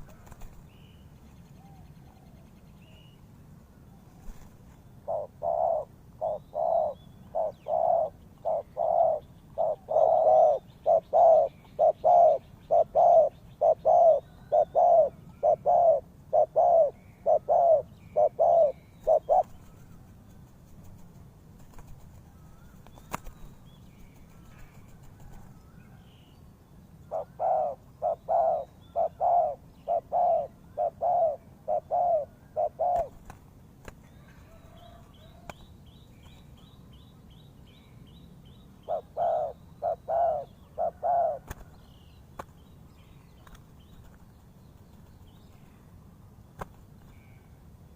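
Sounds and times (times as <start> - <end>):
small birds chirping: 4.0 - 47.6
dove cooing: 5.0 - 20.0, 27.1 - 33.3, 34.0 - 35.6, 38.9 - 41.7.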